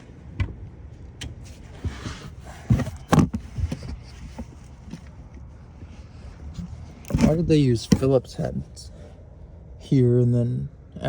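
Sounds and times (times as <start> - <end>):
knocks and thumps: 1.2 - 5.0.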